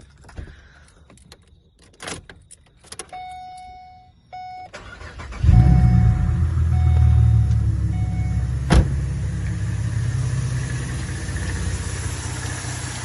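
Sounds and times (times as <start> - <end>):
car engine starting and running: 4.4 - 13.0
brief steady tone: 5.5 - 8.4.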